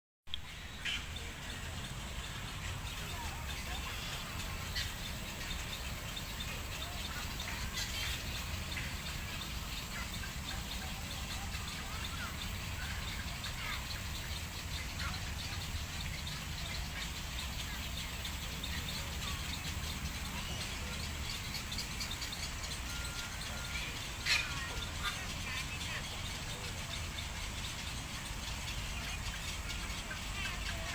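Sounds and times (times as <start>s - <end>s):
birds chirping: 0.3s - 30.9s
steady low hum: 0.3s - 30.9s.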